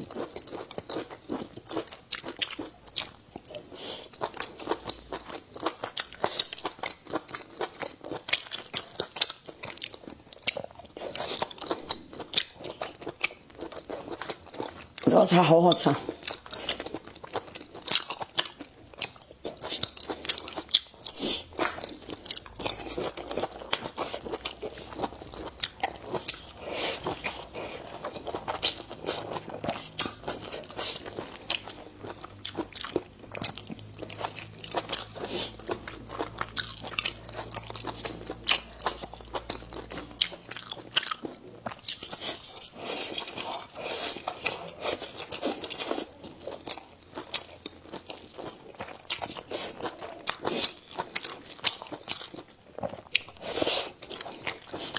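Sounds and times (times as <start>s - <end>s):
crunchy eating and chewing: 0.0s - 54.9s
faint low hum: 16.0s - 52.0s.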